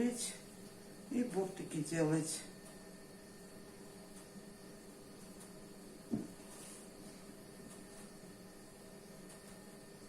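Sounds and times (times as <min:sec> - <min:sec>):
low steady hum: 0:00.0 - 0:10.0
soft dull thump: 0:06.1 - 0:06.4.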